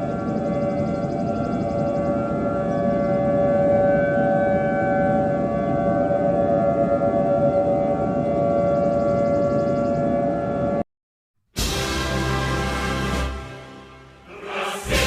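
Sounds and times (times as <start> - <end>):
steady siren: 0.0 - 10.8.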